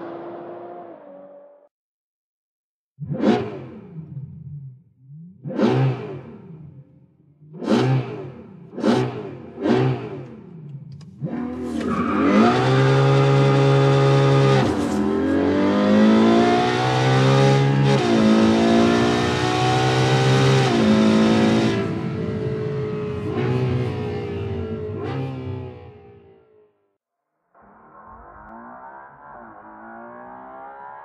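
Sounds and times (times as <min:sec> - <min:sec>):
car engine revving: 0:03.0 - 0:26.4, 0:27.6 - 0:31.0
car accelerating hard: 0:07.5 - 0:26.2, 0:27.8 - 0:31.0.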